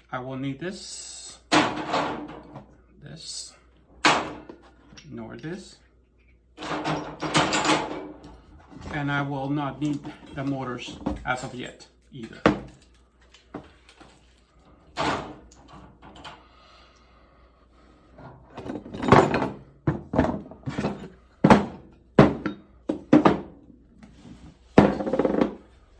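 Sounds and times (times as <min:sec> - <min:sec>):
parts clunking on work surface: 0:06.6 - 0:09.2, 0:18.5 - 0:23.6, 0:24.7 - 0:25.6.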